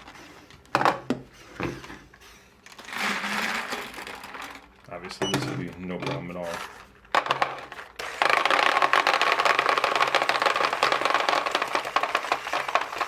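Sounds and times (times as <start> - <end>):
paintballs rattling: 2.7 - 5.0, 5.6 - 13.0
paintball hopper motor whirring: 7.7 - 13.0.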